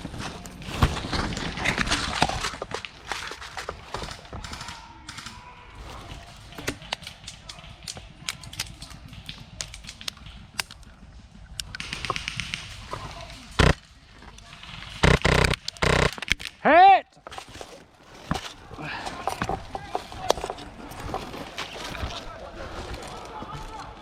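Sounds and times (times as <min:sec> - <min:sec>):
airsoft guns firing: 0:11.7 - 0:13.8, 0:15.0 - 0:16.4.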